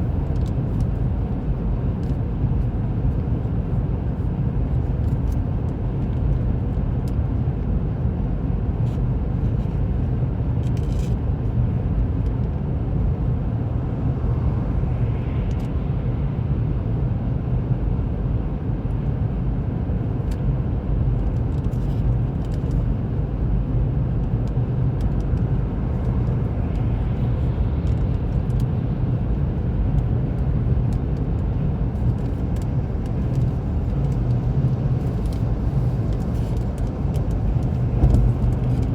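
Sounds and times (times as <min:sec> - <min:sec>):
car road and engine drone: 0:00.0 - 0:38.9.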